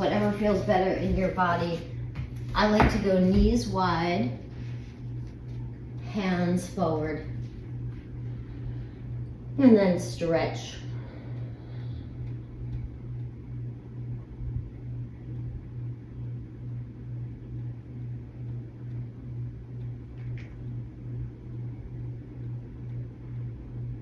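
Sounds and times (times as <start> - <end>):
low pulsing mechanical hum: 0.0 - 24.0.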